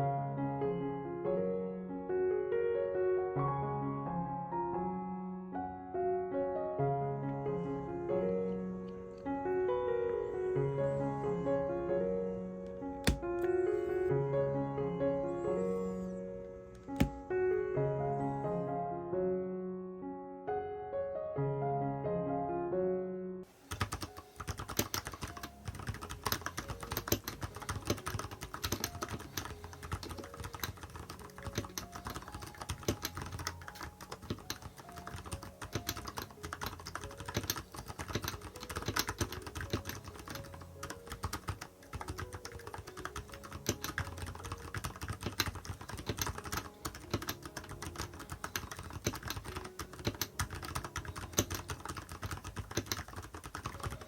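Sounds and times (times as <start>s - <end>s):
mechanical keyboard typing: 13.0s - 14.0s, 16.8s - 17.4s, 23.7s - 54.0s.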